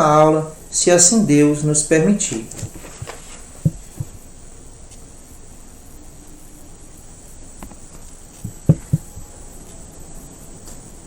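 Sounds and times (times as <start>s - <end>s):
high-pitched background tone: 3.4s - 11.0s
dull knocks: 3.6s - 4.2s, 8.4s - 9.2s.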